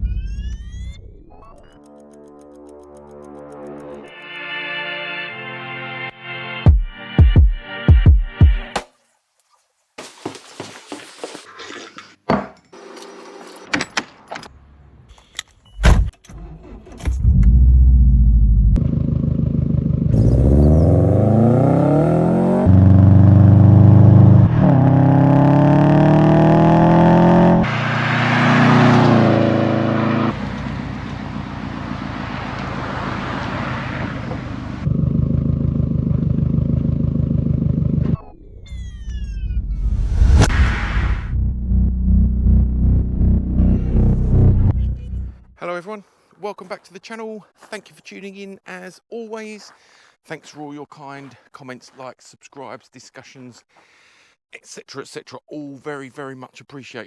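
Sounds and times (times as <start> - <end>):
car engine accelerating: 17.1 - 38.3, 39.7 - 45.5.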